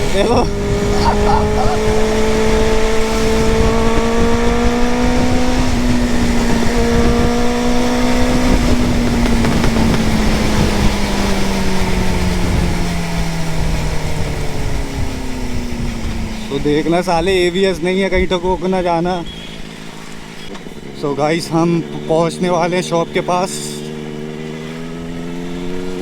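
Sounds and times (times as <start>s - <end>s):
wind rushing on microphone: 0.0s - 19.4s
motorcycle engine revving: 0.0s - 26.0s.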